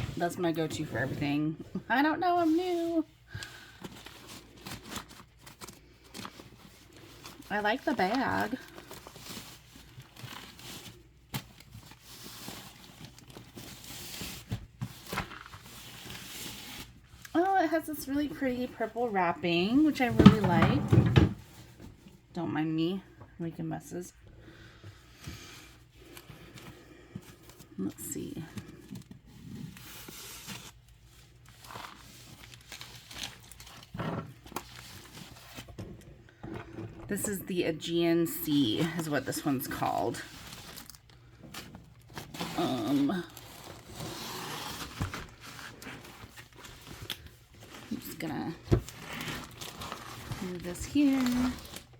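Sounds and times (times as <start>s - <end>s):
packaging rustling and crinkling: 2.4s - 17.5s, 25.5s - 51.9s.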